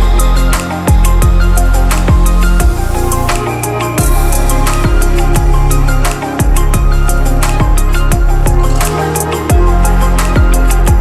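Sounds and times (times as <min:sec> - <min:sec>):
deep bass line: 0:00.0 - 0:11.0
hi-hat ticks: 0:00.0 - 0:11.0
synth notes: 0:00.0 - 0:11.0
kick drum hits: 0:04.0 - 0:04.2, 0:04.9 - 0:05.6, 0:06.4 - 0:07.0.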